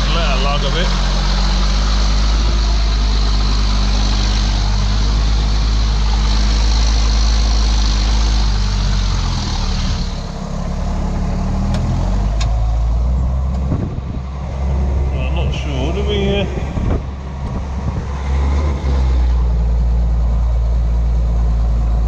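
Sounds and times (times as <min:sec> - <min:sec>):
tractor diesel engine under load: 0:00.0 - 0:22.0.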